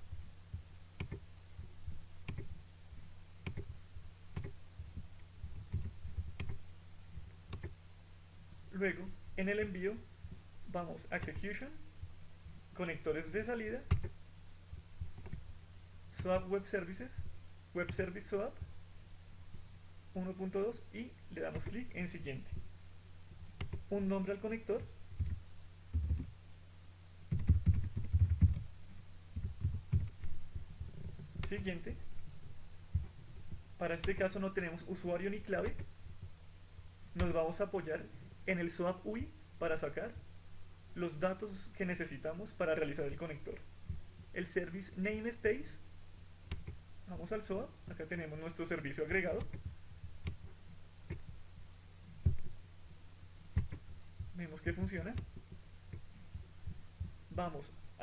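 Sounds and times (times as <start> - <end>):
low electrical hum: 0.0 - 58.0
typing on computer keyboard: 1.0 - 1.2, 5.5 - 6.6, 27.3 - 28.7
computer mouse clicks: 1.0 - 1.3, 2.2 - 2.6, 3.4 - 6.6, 7.5 - 7.8, 13.9 - 14.2, 23.6 - 23.9, 27.3 - 28.7, 46.5 - 46.8.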